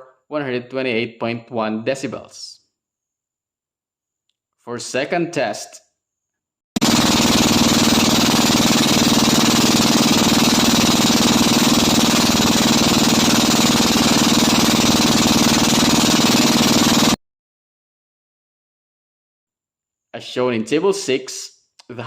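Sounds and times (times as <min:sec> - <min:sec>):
boat engine running: 0:06.8 - 0:17.2.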